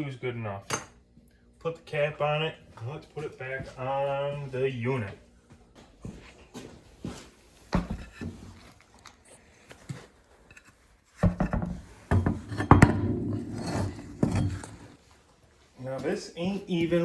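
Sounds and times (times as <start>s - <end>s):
rubbing and clattering: 10.5s - 15.1s
tools knocking and clinking: 11.3s - 14.9s.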